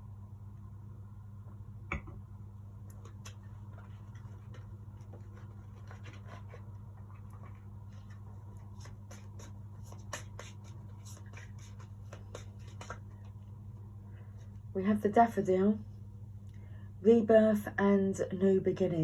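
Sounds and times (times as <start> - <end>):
low electrical hum: 0.0 - 19.0
cards being shuffled: 3.0 - 13.5.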